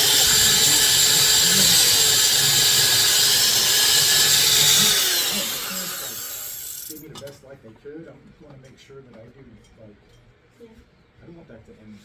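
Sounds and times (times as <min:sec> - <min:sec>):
power tool motor whirring: 0:00.0 - 0:07.0.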